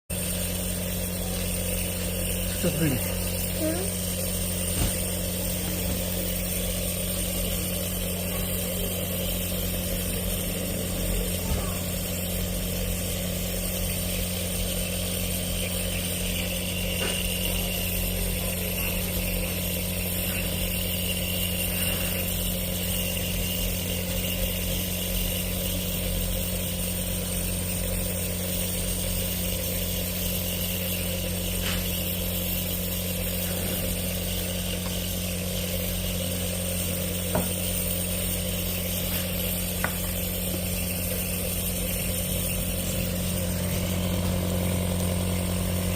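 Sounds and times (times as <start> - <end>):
nebulizer electric buzz: 0.0 - 45.9.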